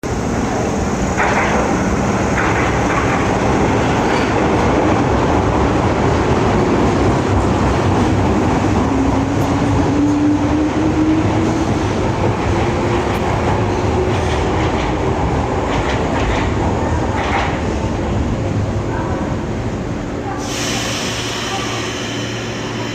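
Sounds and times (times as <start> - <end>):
train wheels rumbling on rail: 0.0 - 22.9
rail-joint clacks: 1.1 - 4.8, 12.2 - 17.8.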